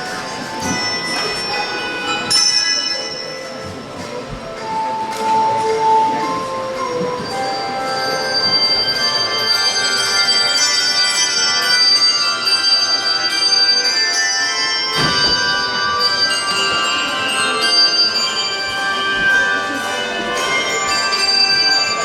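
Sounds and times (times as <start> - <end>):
handbell choir playing: 0.0 - 22.0.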